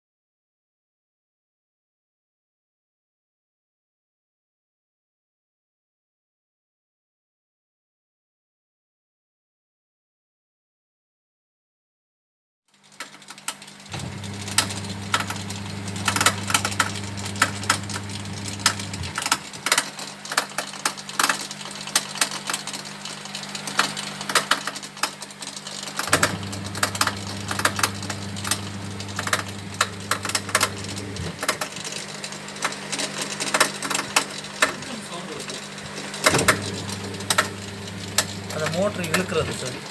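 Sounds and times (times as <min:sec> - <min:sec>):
sharp clicks and rattles: 0:12.7 - 0:39.9
washing machine electrical hum: 0:12.9 - 0:39.9
deeper motor hum: 0:13.9 - 0:19.3, 0:26.0 - 0:32.9, 0:34.4 - 0:39.9.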